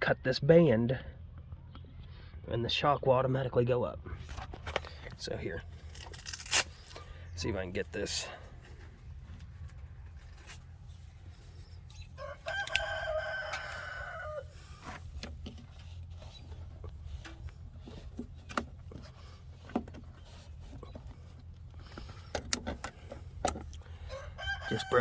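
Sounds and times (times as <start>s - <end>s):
steady low hum: 0.0s - 24.4s
rooster crowing: 12.1s - 14.8s, 23.9s - 25.0s.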